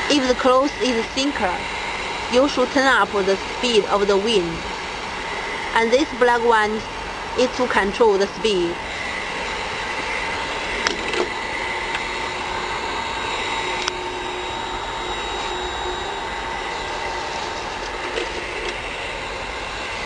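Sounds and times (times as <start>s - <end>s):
hot-air blower rushing: 0.0s - 20.0s.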